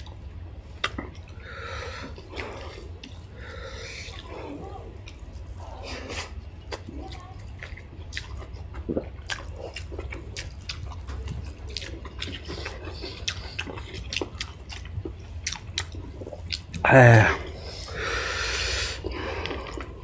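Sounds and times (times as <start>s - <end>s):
wet chewing and lip smacks: 0.0s - 1.4s, 5.0s - 16.9s
low steady hum: 0.0s - 20.0s.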